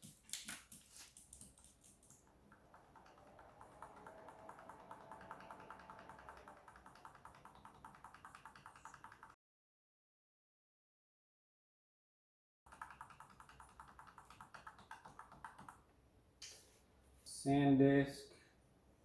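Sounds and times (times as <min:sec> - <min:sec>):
keyboard key tapping: 0:00.0 - 0:09.4, 0:12.7 - 0:15.8.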